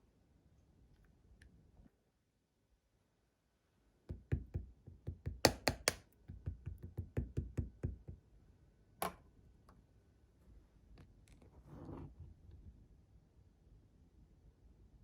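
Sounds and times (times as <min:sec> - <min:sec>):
fingers squishing slime: 0:05.0 - 0:07.8.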